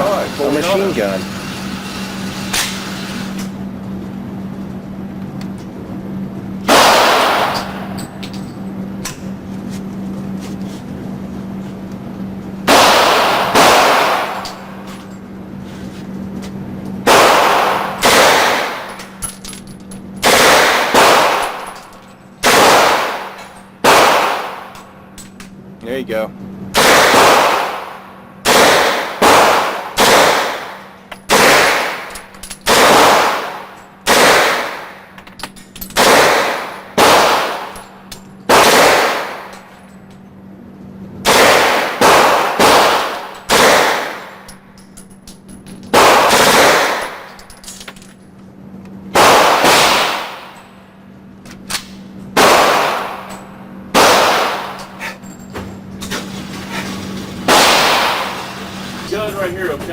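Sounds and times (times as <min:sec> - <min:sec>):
gunshots ringing indoors: 0:06.6 - 0:08.1, 0:12.6 - 0:14.9, 0:17.0 - 0:19.1, 0:20.2 - 0:21.8, 0:22.4 - 0:24.9, 0:26.7 - 0:35.2, 0:36.0 - 0:37.9, 0:38.5 - 0:39.7, 0:41.2 - 0:44.5, 0:45.9 - 0:47.4, 0:49.1 - 0:50.8, 0:51.7 - 0:55.1, 0:57.4 - 0:58.7.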